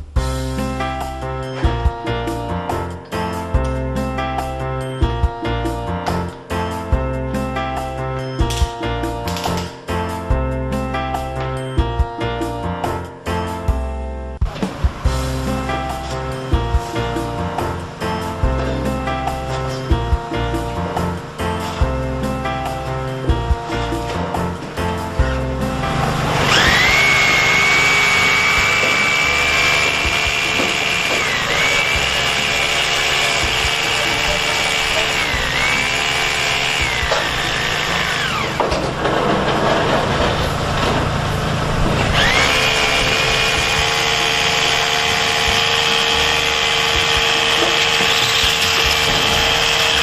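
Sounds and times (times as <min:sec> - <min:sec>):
hammer drill motor whine: 0:26.0 - 0:38.6, 0:42.0 - 0:50.0.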